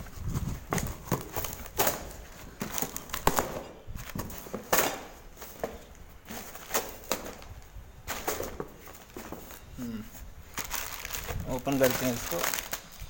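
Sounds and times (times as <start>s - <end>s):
packaging rustling and crinkling: 0.0s - 13.0s
packaging clicks: 10.5s - 13.0s.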